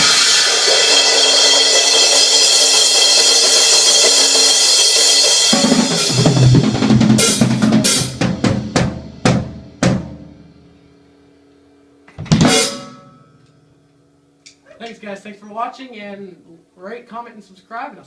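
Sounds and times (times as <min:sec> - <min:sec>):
drum kit solo: 0:00.0 - 0:11.0, 0:12.1 - 0:13.4.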